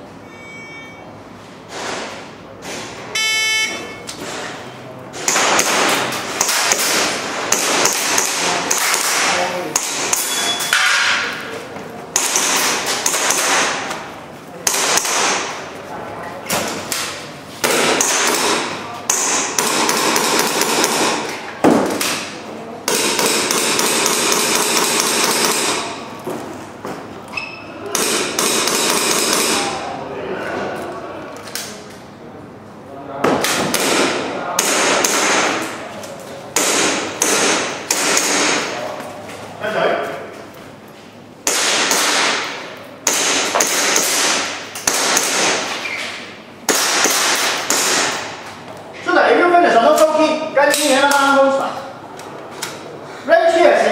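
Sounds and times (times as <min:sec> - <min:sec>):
airsoft pistol shots: 0:12.2 - 0:13.9, 0:14.6 - 0:15.5, 0:17.6 - 0:21.3, 0:22.9 - 0:26.0, 0:33.4 - 0:35.6, 0:36.6 - 0:38.7, 0:41.4 - 0:45.7, 0:46.7 - 0:48.4
airsoft pistol shots cracking: 0:12.2 - 0:13.9, 0:41.4 - 0:45.7, 0:46.7 - 0:48.3.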